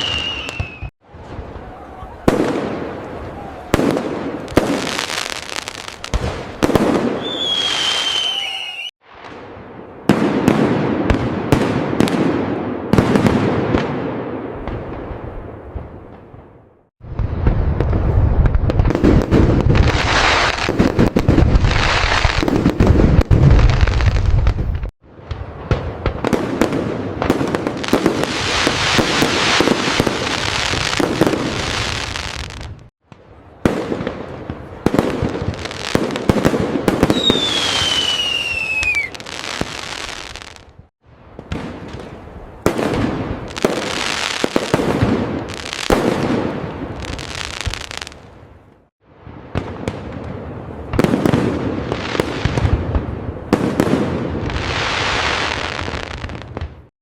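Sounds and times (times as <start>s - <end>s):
falling firework whistle: 0.0s - 2.6s, 6.9s - 9.4s, 37.0s - 40.6s
fireworks crackling and booming: 0.0s - 56.9s.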